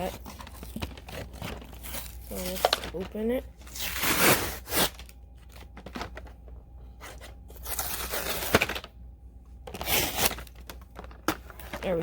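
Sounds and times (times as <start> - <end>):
cardboard tearing: 3.6 - 5.1, 7.5 - 8.9, 9.7 - 11.7
plastic crinkling: 9.7 - 12.0.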